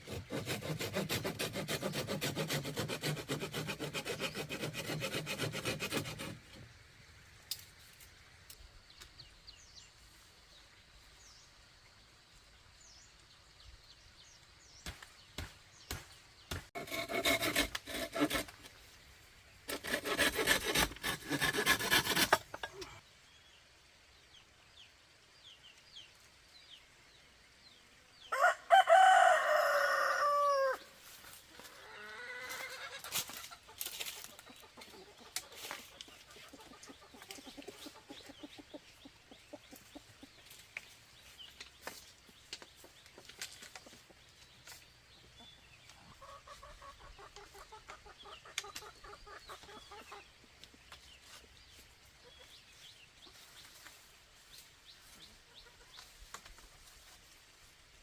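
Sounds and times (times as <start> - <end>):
rooster crowing: 28.3 - 30.9
chicken clucking: 31.6 - 40.5, 45.3 - 50.3, 55.2 - 56.1.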